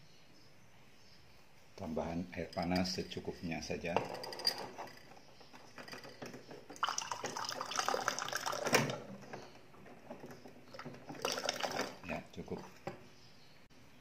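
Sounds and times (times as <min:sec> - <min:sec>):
glass clink: 0:02.4 - 0:03.3
water pouring into a glass: 0:06.8 - 0:09.0, 0:11.1 - 0:12.0.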